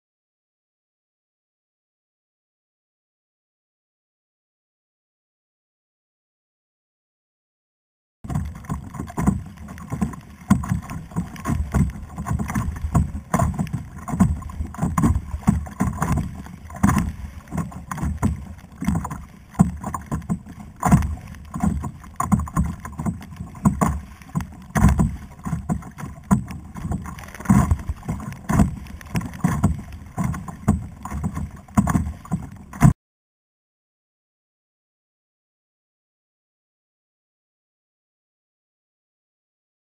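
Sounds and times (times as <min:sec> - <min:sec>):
water splashing against kayak hull: 0:08.3 - 0:33.0.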